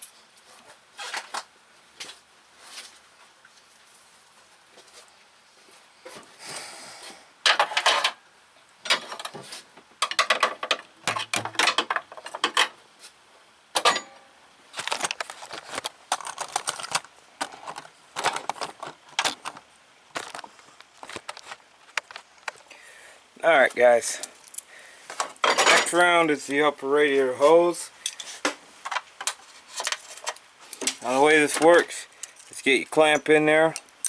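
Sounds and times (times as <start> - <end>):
metal tools clattering: 7.5 - 8.2, 13.8 - 14.2, 25.4 - 26.0.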